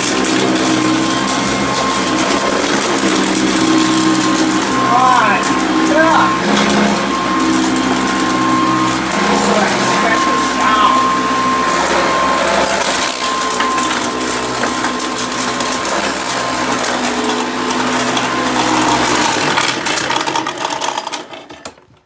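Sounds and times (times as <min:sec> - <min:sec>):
debris rattling through vacuum: 0:00.0 - 0:22.0
vacuum cleaner motor whine: 0:00.0 - 0:22.0.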